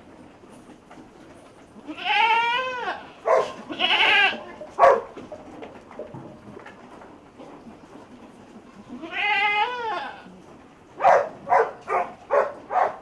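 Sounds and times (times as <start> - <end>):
goat bleating: 1.8 - 4.6, 8.8 - 10.4.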